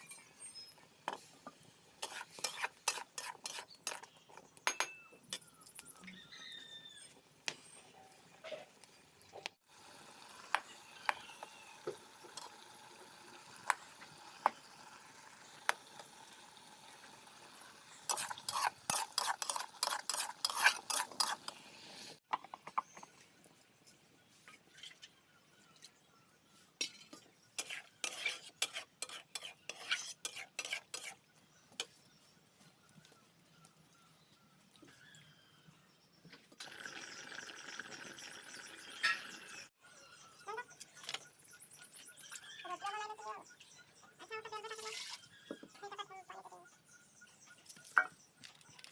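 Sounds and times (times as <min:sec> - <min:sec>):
metal spoon scraping a pan: 0:02.0 - 0:04.2, 0:18.0 - 0:22.2, 0:26.8 - 0:31.2, 0:44.6 - 0:45.3
faint sizzle: 0:08.2 - 0:18.6.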